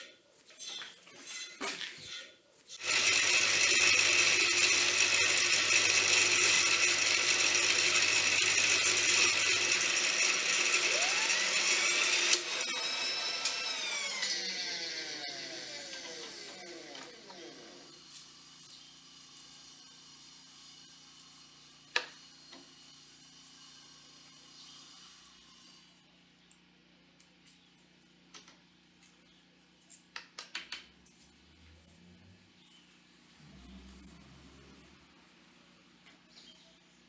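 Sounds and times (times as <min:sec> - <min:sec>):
electric power tool whining: 0:02.8 - 0:25.9.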